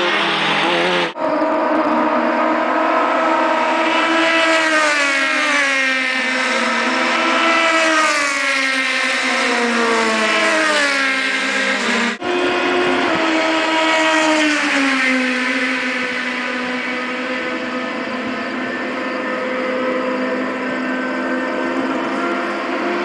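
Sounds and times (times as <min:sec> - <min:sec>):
race car engines: 0:00.0 - 0:23.0.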